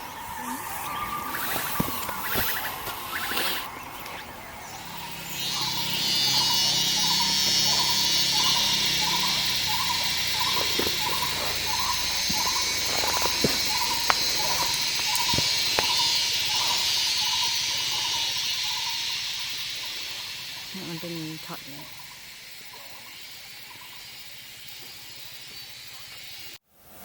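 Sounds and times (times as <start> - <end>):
insect chorus buzzing: 0.0 - 26.6
sharp clicks: 5.4 - 19.9.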